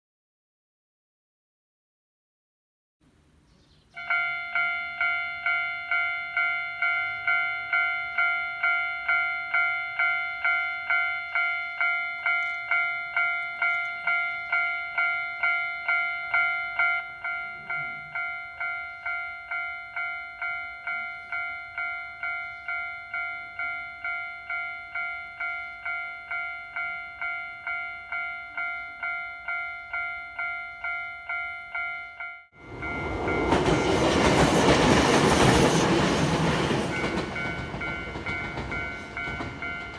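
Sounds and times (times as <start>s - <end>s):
level crossing alarm clanging: 4.0s - 39.9s
passing train rushing: 32.6s - 39.9s.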